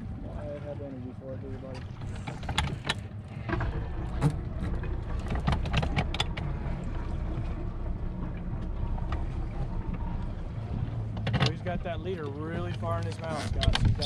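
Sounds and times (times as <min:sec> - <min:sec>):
boat engine running: 0:00.0 - 0:14.0
water noise: 0:00.0 - 0:14.0
sharp clicks and knocks: 0:02.1 - 0:06.5, 0:12.6 - 0:14.0
wind noise: 0:13.4 - 0:14.0.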